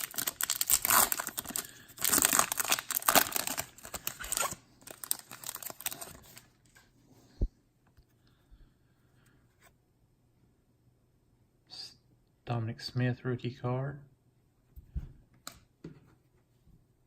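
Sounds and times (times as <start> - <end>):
foil wrapper tearing and crinkling: 0.0 - 6.4.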